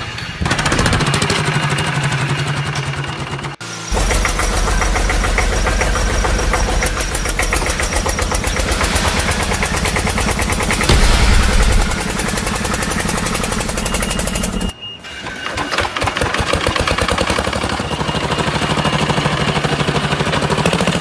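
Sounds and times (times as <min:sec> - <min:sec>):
engine running with rapid knocking: 0:00.4 - 0:14.7, 0:15.5 - 0:21.0.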